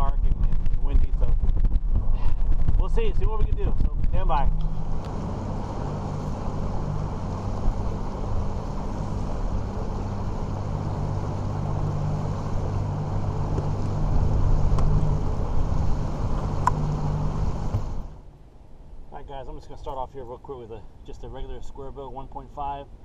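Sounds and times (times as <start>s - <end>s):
outboard motor running: 0.0s - 18.3s
rush of wind and water: 0.0s - 19.8s.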